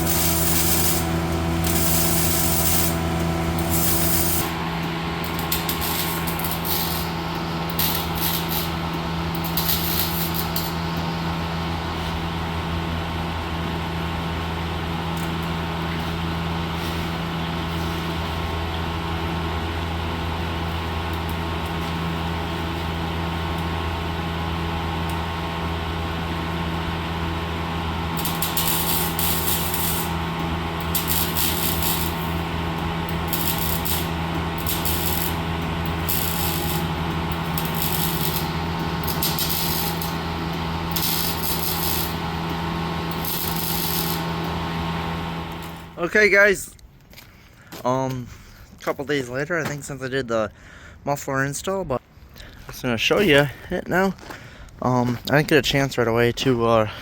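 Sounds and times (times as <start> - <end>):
tool scraping exhaust pipe: 0.0 - 11.1, 15.9 - 18.5, 28.1 - 44.7
low machine hum: 0.0 - 51.0.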